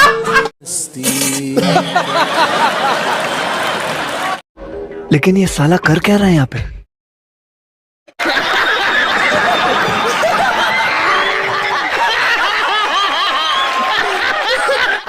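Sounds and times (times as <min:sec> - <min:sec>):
crowd laughing and giggling: 0:01.6 - 0:04.4, 0:08.2 - 0:15.0.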